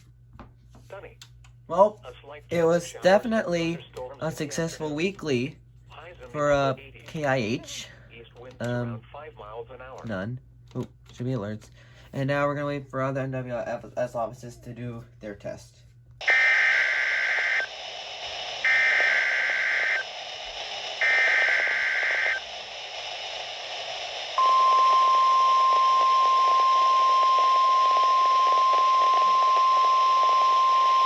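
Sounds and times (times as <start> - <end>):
radio static hiss: 2.0 - 10.3, 16.2 - 31.0
warbling digital data tones: 16.2 - 31.0.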